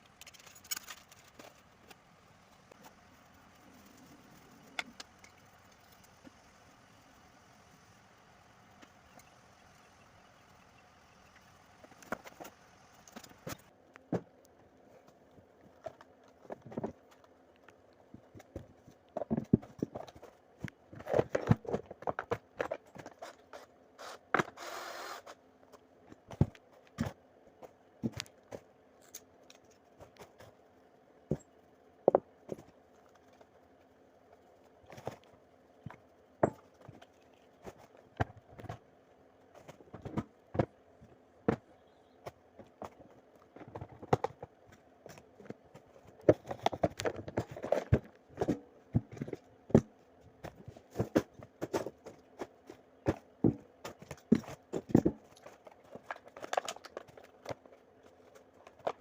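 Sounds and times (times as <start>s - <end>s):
faint steady hum: 0.0s - 59.0s
wooden pieces and tools knocking: 36.4s - 38.8s.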